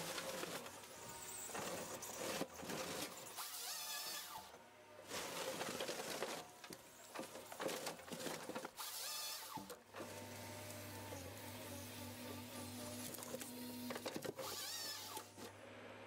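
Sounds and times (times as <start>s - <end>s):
forestry harvester machine noise: 0.0s - 16.0s.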